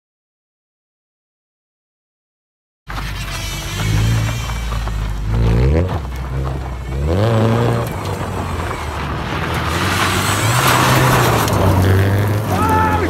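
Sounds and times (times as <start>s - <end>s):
car engine revving: 2.9s - 13.0s.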